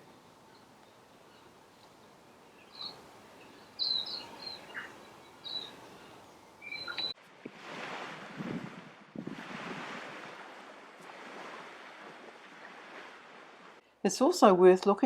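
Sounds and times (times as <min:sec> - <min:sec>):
bird chirping: 0:00.0 - 0:07.2
surf: 0:00.0 - 0:13.8
gusty wind on microphone: 0:06.6 - 0:13.8.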